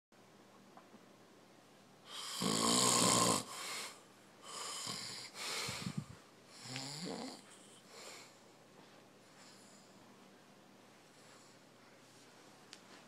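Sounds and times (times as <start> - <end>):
man snoring: 2.1 - 3.9, 4.5 - 5.4, 6.6 - 7.4.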